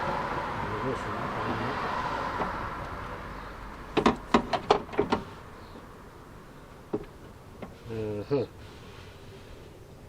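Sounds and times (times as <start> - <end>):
tools clicking and knocking: 3.9 - 5.2.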